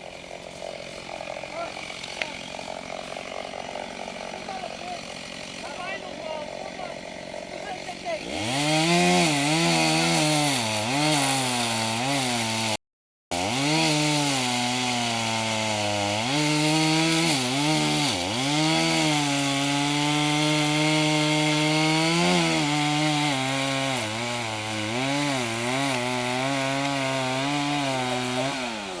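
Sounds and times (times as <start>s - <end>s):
chainsaw cutting wood: 0.0s - 29.0s.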